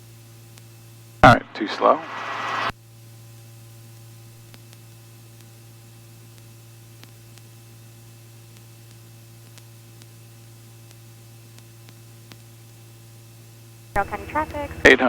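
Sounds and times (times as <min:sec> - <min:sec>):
even hiss: 0:01.2 - 0:02.7
faint irregular clicks: 0:08.5 - 0:12.4
faint low hum: 0:13.2 - 0:15.0.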